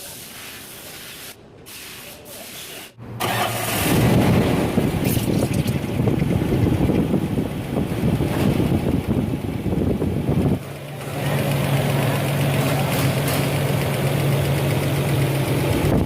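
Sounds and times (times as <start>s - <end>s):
engine rumbling: 2.9s - 16.0s
engine idling hum: 3.0s - 16.0s
wind on microphone: 3.8s - 10.6s.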